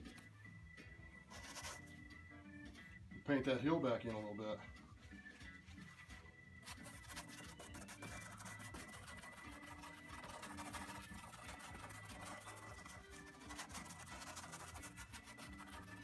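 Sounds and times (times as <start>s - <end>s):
soft background music: 0.0s - 16.0s
paintbrush scrubbing on canvas: 5.5s - 16.0s.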